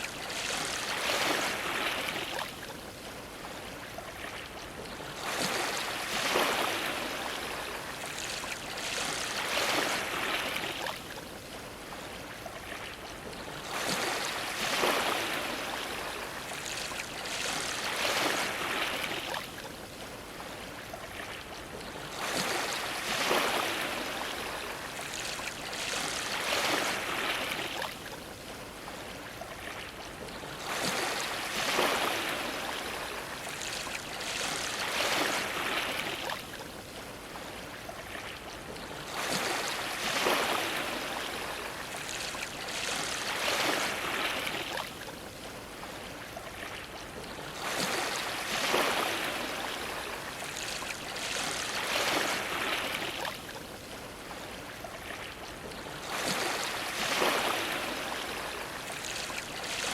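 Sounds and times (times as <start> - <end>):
ocean waves washing against dock: 30.5 - 59.9.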